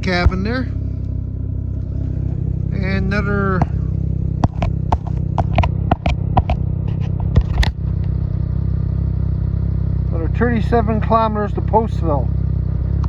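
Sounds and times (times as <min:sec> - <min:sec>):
snowmobile engine running: 0:00.0 - 0:07.8
sharp knocks and clatter: 0:04.4 - 0:07.8.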